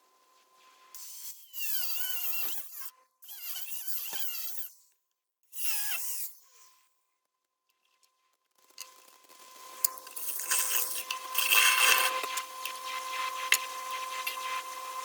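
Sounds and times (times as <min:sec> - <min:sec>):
handheld power tool bursts: 0:01.0 - 0:04.8, 0:05.5 - 0:06.4.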